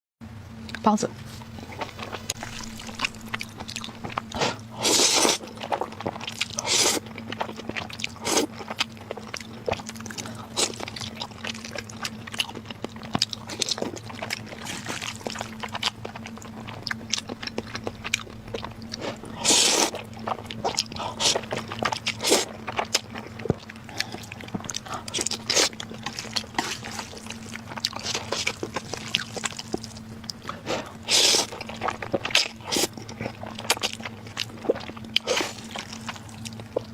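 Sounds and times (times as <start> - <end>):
low hum: 0.2 - 36.9
wet chewing: 0.7 - 36.9.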